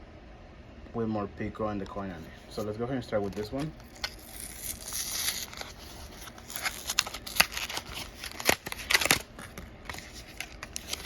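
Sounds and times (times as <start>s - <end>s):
blister pack being opened: 2.5s - 11.0s.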